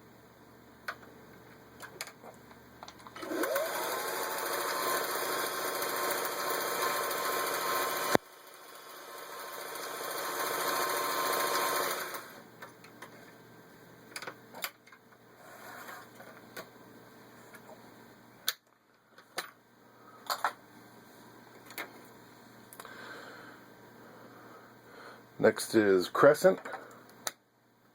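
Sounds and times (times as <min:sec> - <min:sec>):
sewing machine stitching: 0:03.2 - 0:12.4.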